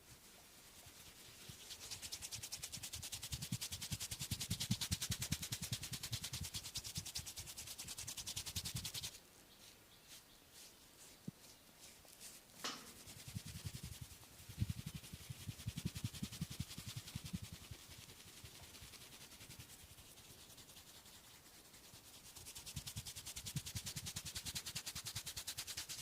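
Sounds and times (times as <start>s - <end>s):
hands rubbing over skin: 0.1s - 26.0s
soft thuds of palms: 12.5s - 13.1s.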